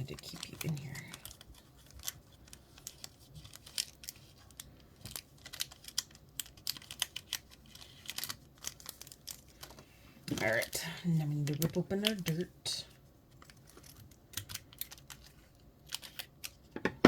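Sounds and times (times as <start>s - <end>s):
plastic pieces clicking and tapping: 11.4s - 12.4s.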